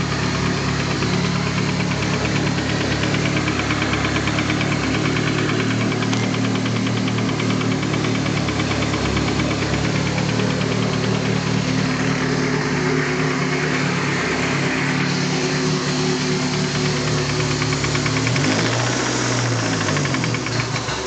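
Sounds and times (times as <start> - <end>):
car engine idling: 0.0 - 21.0
fast regular engine knock: 0.0 - 21.0.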